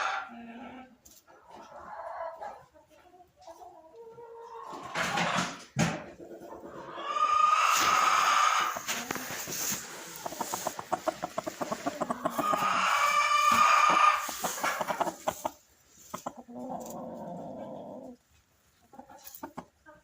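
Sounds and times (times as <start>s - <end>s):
rooster clucking: 6.3s - 18.2s, 18.9s - 20.0s.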